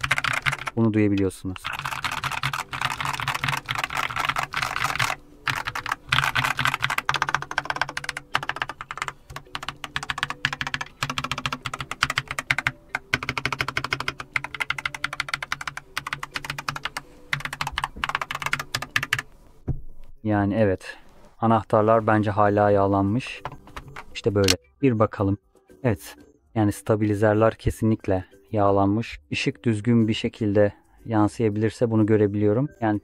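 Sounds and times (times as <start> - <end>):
fast typing on mechanical keyboard: 0.0 - 0.8, 1.5 - 19.3.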